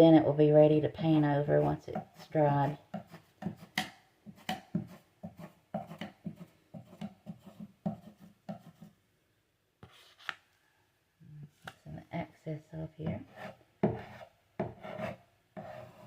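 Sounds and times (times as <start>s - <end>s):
hand tool rubbing on wall: 13.2s - 16.0s.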